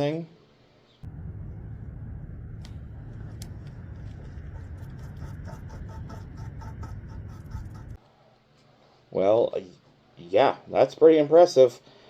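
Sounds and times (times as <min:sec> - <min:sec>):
steady low rumble: 0:01.0 - 0:08.0.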